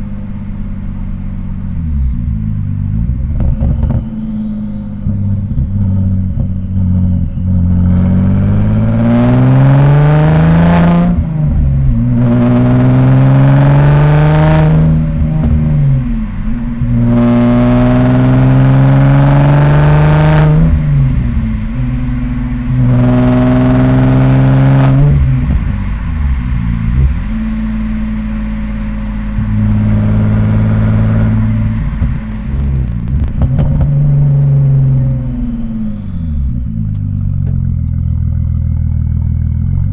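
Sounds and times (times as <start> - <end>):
car engine accelerating: 0.0 - 39.9
high turbo whistle: 4.0 - 5.2, 7.9 - 33.4, 34.0 - 36.6.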